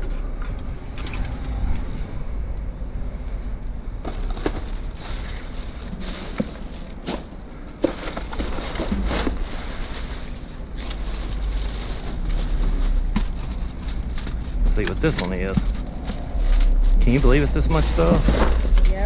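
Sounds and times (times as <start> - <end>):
low rumble: 0.0 - 7.6, 8.8 - 19.0
plastic packaging rustling: 4.0 - 19.0.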